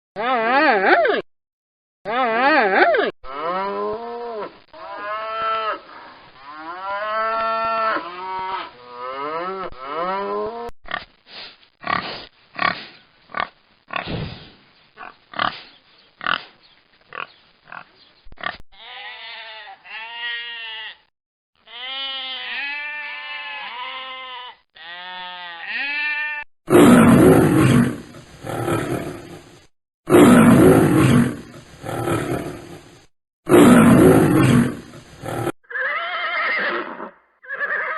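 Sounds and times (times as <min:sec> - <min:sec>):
big animal roaring: 0:26.7 - 0:29.5, 0:30.1 - 0:35.6
animal grunts: 0:33.5 - 0:35.6.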